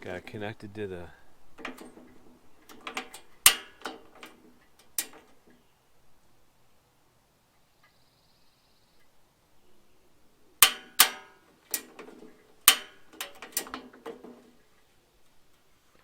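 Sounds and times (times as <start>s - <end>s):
sharp metallic clicks and clanks: 1.5s - 5.6s, 10.6s - 14.6s.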